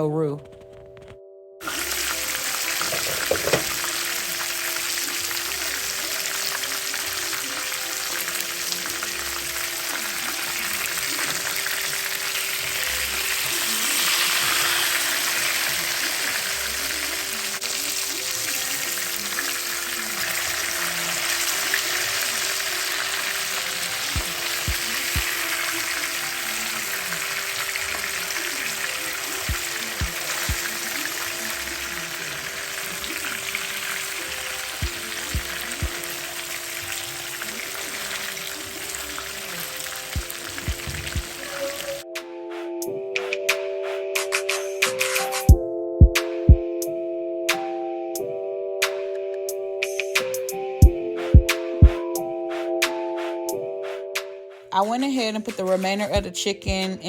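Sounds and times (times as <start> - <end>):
chicken frying in hot oil: 1.6 - 42.0.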